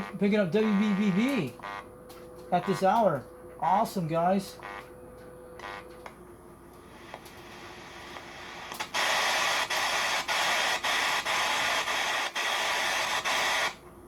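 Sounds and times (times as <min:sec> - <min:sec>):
faint radio static: 0:00.0 - 0:01.7, 0:02.5 - 0:04.9
radio hiss while tuning: 0:06.9 - 0:13.8.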